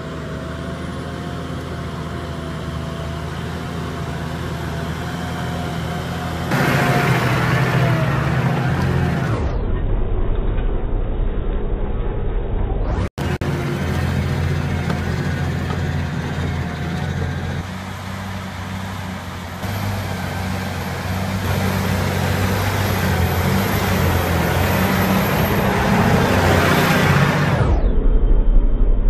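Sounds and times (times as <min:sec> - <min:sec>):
tractor diesel engine under load: 0:00.0 - 0:09.6, 0:13.1 - 0:27.7.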